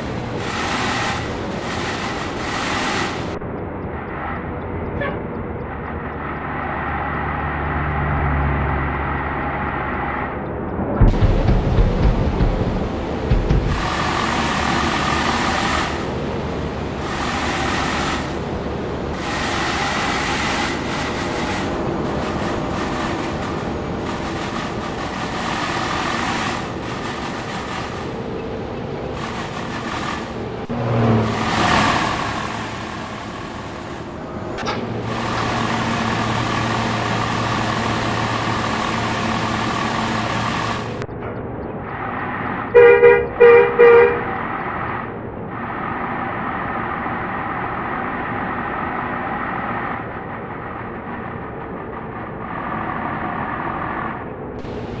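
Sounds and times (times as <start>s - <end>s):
traffic passing on a road: 0.0s - 10.4s, 11.0s - 55.0s
vehicle sweeping past: 11.0s - 41.0s
multi-tone horn blasts: 11.1s - 41.0s, 42.7s - 44.3s
fast-pulsing melodic bus horn: 12.8s - 41.0s, 42.7s - 44.3s.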